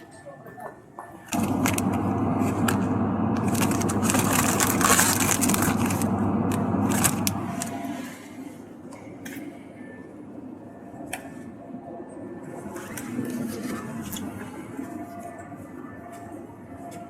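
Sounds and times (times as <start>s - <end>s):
shopping cart rolling and rattling: 1.4s - 7.6s.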